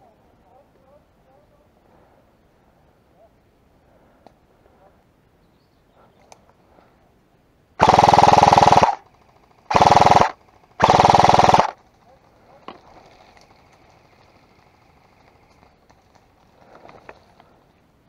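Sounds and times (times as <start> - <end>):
airsoft rifle bursts: 7.8 - 12.3.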